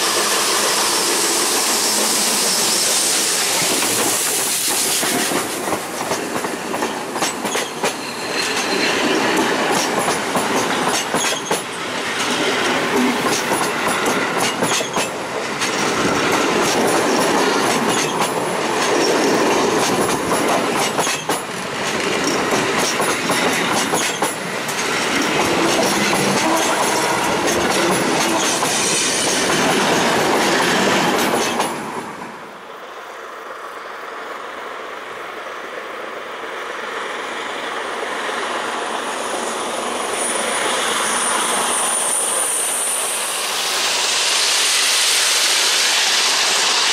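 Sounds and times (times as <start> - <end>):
train wheels clacking over rail joints: 0.0 - 32.1.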